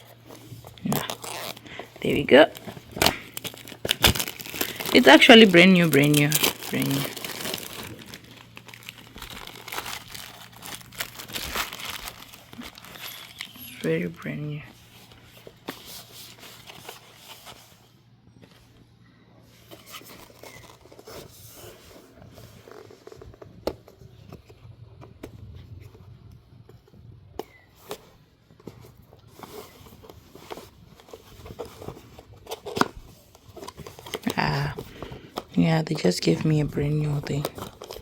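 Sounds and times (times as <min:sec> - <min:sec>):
packaging rustling: 0:00.0 - 0:17.9, 0:27.4 - 0:38.0.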